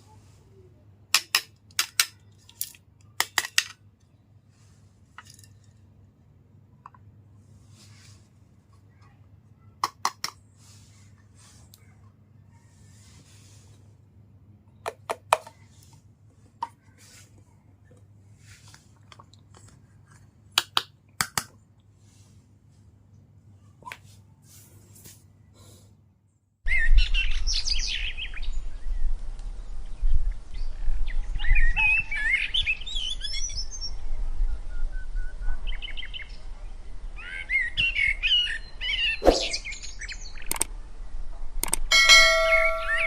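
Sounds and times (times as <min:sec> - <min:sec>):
low steady hum: 0:40.6 - 0:43.0.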